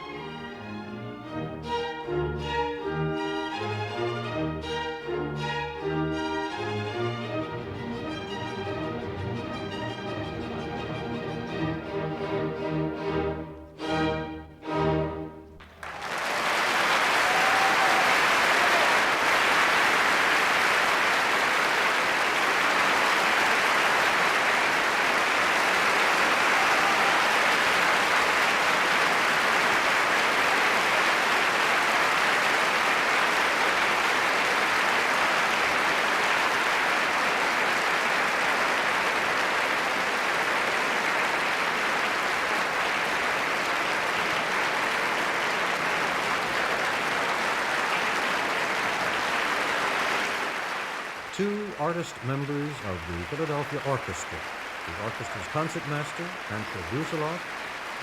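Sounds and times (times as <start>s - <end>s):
audience applauding: 15.6s - 58.0s.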